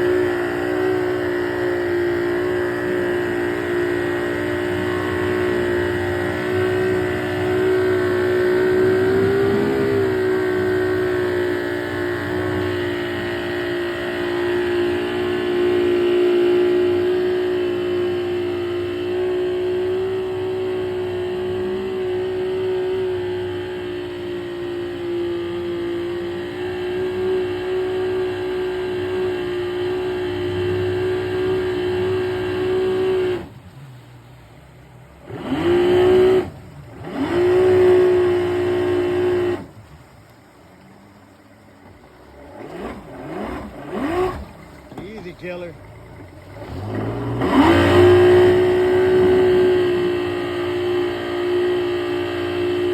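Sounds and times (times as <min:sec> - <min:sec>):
outboard engine revving: 0:00.0 - 0:52.9.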